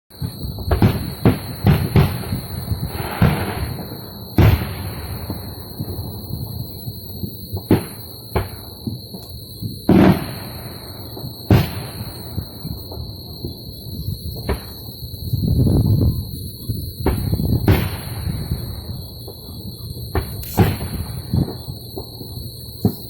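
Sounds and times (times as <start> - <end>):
explosive bangs echoing: 0.3 - 6.6, 9.9 - 12.7, 17.0 - 18.9, 20.2 - 21.6.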